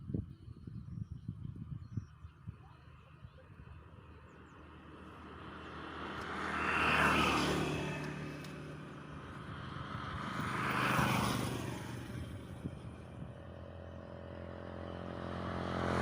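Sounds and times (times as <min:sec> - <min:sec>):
road vehicles driving past: 0:02.9 - 0:16.0.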